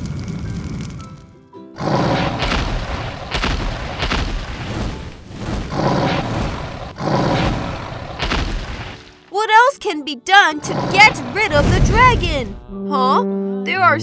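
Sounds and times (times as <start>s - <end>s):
booming sound effects: 2.4s - 9.2s
music with steady beat: 8.4s - 9.3s.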